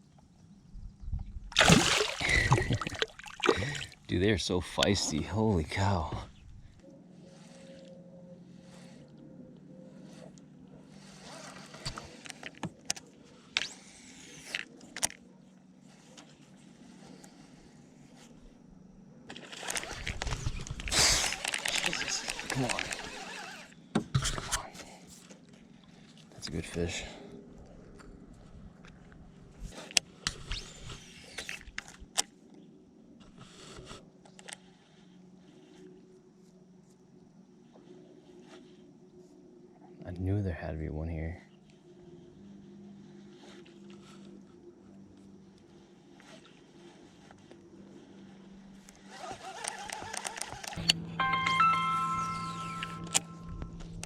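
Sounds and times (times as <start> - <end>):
steady low hum: 0.0 - 49.3, 50.8 - 54.0
reel whirring: 6.8 - 24.6, 29.8 - 32.4, 41.7 - 51.0, 52.0 - 54.0
fishing tackle clicking and rattling: 19.3 - 23.2, 49.0 - 51.0.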